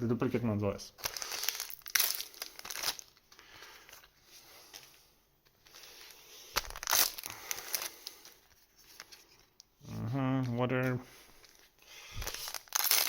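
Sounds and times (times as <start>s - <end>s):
wrapper crinkling and tearing: 1.0s - 4.1s, 5.7s - 13.0s.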